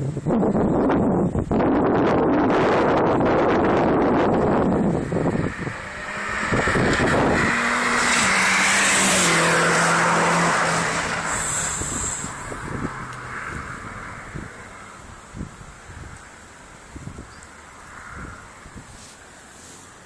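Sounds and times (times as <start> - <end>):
car engine accelerating hard: 3.5 - 15.0.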